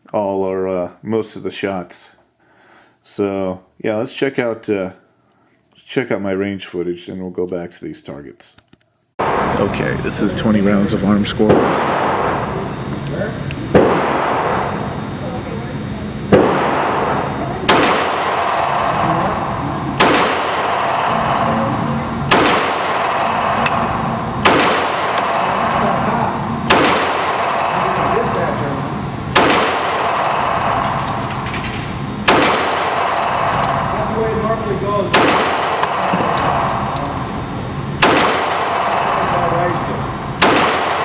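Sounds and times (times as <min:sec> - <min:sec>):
pistol shots echoing: 0:11.5 - 0:12.8, 0:13.7 - 0:15.0, 0:16.3 - 0:41.0.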